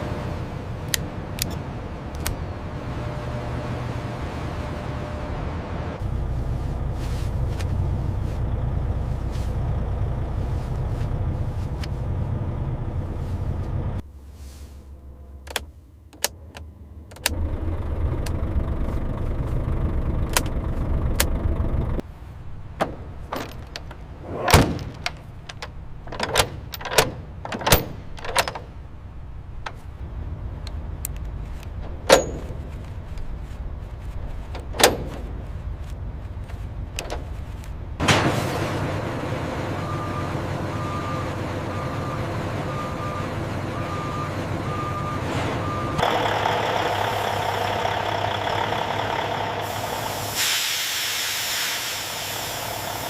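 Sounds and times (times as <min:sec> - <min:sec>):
vehicle engine rumble: 0:00.0 - 0:53.0
knocks and clunks: 0:22.7 - 0:30.0, 0:30.7 - 0:38.4.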